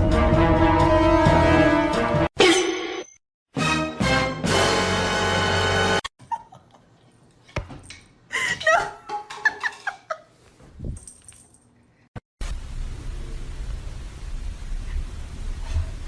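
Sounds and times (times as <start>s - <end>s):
music: 0.0s - 2.3s, 3.5s - 6.0s.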